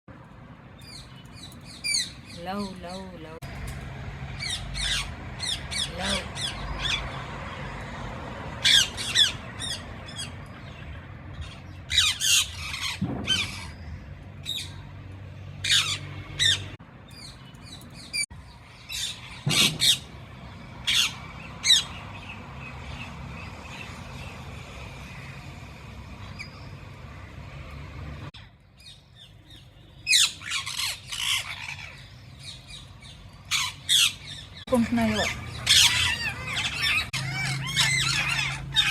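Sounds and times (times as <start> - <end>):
parrot squawking: 30.1 - 32.1, 33.5 - 38.9.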